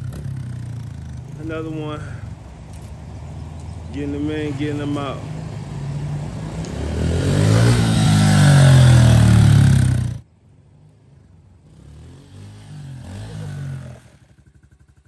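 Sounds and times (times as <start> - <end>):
motorbike engine revving: 0.0 - 10.2, 11.6 - 15.0.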